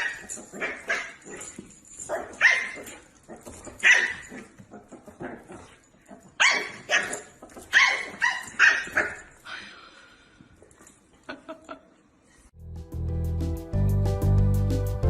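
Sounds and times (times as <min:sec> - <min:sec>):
dog barking: 0:02.1 - 0:03.0, 0:03.8 - 0:04.5, 0:06.4 - 0:09.3
music: 0:12.6 - 0:15.0.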